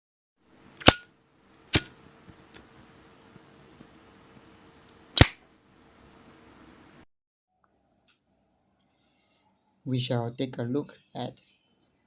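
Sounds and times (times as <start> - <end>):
metallic lighter clicks: 0.8 - 1.0.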